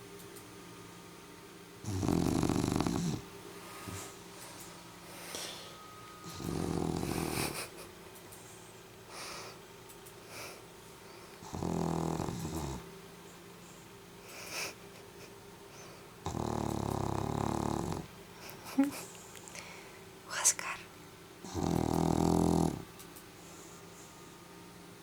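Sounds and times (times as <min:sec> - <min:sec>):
dog snoring: 0:01.8 - 0:04.2, 0:06.2 - 0:07.8, 0:11.3 - 0:12.9, 0:15.8 - 0:18.1, 0:21.4 - 0:22.9.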